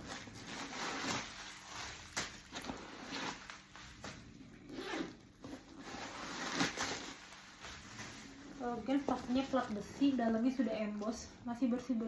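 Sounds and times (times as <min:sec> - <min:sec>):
bag rustling: 0:00.0 - 0:11.2
zipper pulled open: 0:02.5 - 0:03.5, 0:04.6 - 0:07.2.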